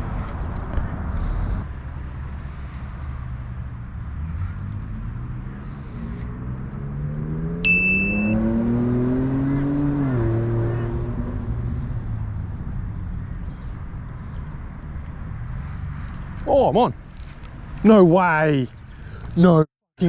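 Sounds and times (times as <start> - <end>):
low wind rumble: 0.0 - 19.4
vehicle engine accelerating: 0.9 - 16.2
short high beep: 7.6 - 8.6.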